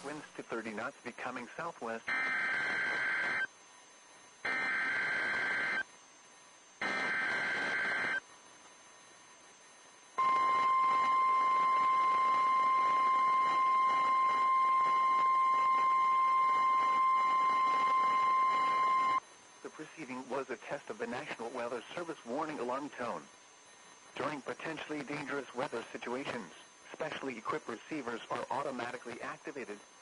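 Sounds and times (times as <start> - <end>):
radio hiss: 0.0 - 30.0
steady warning alarm tone: 1.2 - 3.5, 4.4 - 5.8, 6.8 - 8.2, 10.1 - 19.2.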